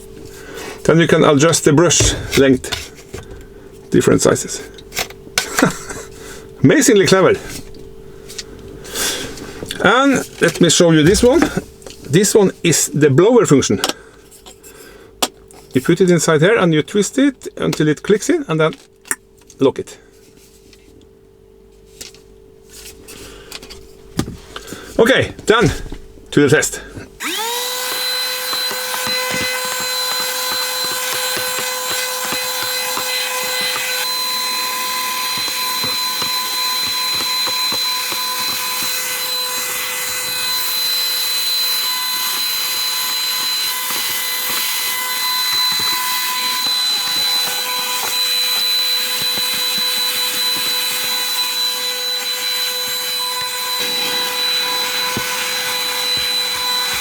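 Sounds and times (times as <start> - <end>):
nozzle scraping surfaces: 1.9 - 3.4, 10.9 - 12.2
vacuum cleaner motor whine: 9.0 - 12.0, 27.2 - 57.0.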